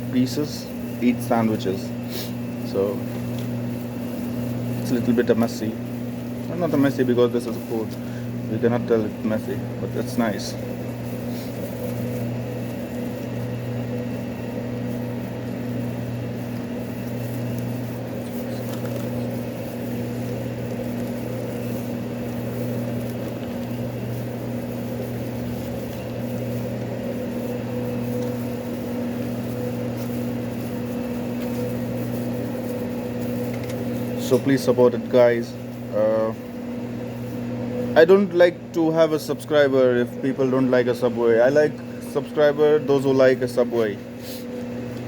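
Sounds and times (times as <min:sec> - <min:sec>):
kitchen equipment humming: 0:00.0 - 0:45.0.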